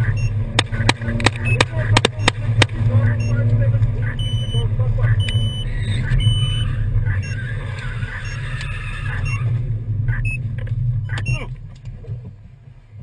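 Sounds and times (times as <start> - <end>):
short electronic beep: 0.0 - 0.4, 1.4 - 2.4, 4.0 - 7.4, 9.2 - 9.5, 11.1 - 11.4
vehicle engine and road hum: 0.0 - 13.0.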